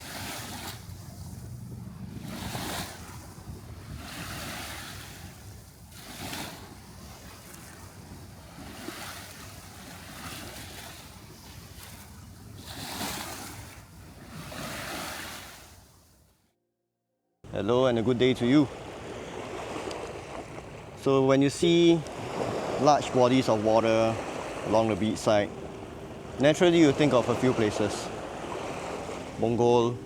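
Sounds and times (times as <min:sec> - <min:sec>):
waves washing onto shore: 0:00.0 - 0:16.2, 0:17.5 - 0:30.0.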